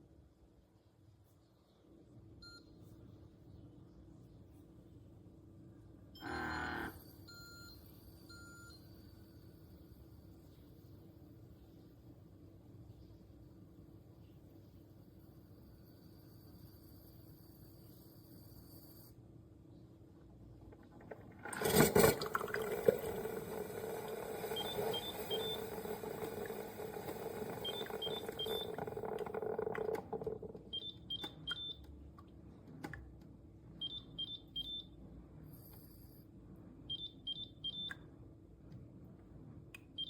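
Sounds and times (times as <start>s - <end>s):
coffee maker pump humming: 20.7s - 30.9s
machine beeping: 21.5s - 31.8s, 33.8s - 34.9s, 36.9s - 38.0s.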